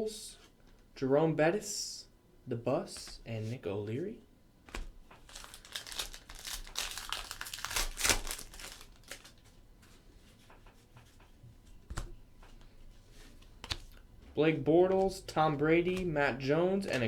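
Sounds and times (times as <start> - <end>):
wrapper tearing and crinkling: 4.7 - 9.5.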